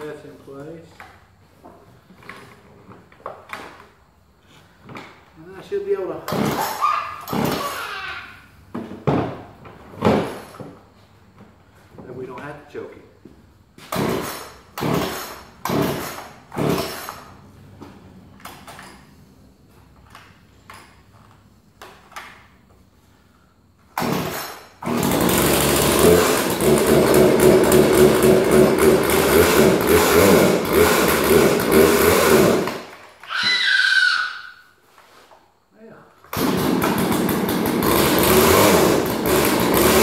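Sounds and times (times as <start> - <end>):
chainsaw starter rope pulls: 6.2 - 7.8, 13.9 - 17.3, 24.0 - 33.4, 36.3 - 40.0
chainsaw engine buzzing: 24.0 - 32.9, 36.3 - 40.0.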